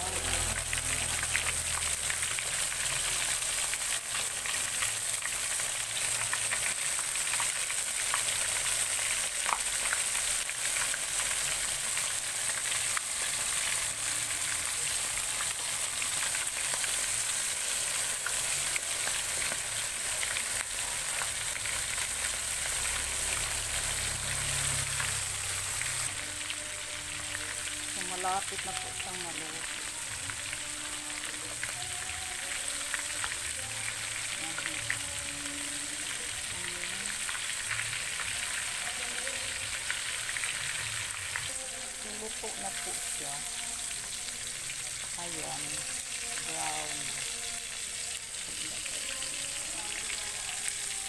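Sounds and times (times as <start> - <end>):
chicken sizzling in hot oil: 0.0 - 51.0
oil pops and crackles: 9.3 - 10.1.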